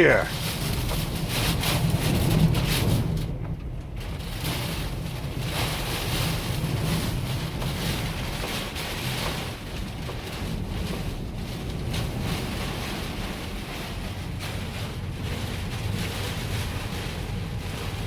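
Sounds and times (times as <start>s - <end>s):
storm wind buffeting microphone: 0.0s - 18.0s.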